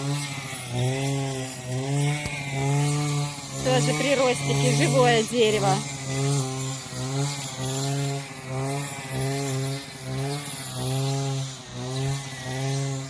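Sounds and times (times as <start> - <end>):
grass trimmer running: 0.0 - 13.0.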